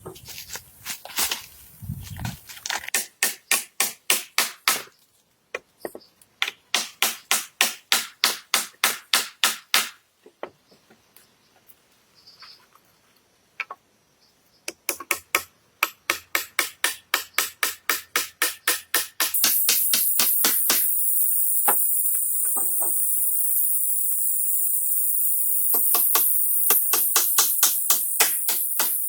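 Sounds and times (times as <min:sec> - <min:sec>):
hand tool striking wood: 0:02.8 - 0:04.9, 0:06.4 - 0:10.0, 0:14.7 - 0:20.9, 0:25.7 - 0:29.0.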